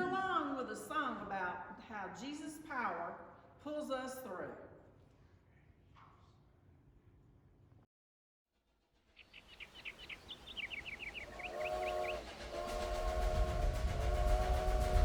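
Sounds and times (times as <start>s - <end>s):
train chugging: 9.0s - 15.0s
train whistle blowing: 10.6s - 15.0s.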